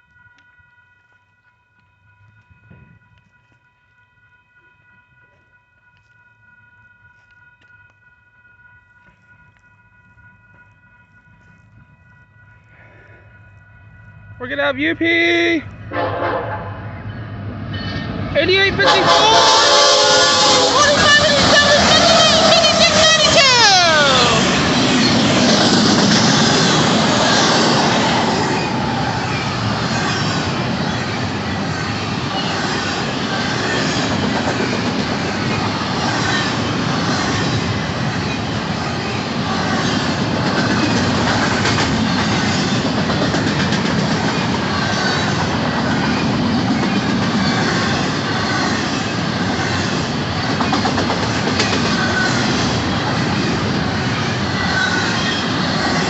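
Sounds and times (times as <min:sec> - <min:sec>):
train wheels rushing on rail: 0:14.6 - 0:56.0
clickety-clack over rail joints: 0:24.5 - 0:29.0, 0:29.8 - 0:56.0.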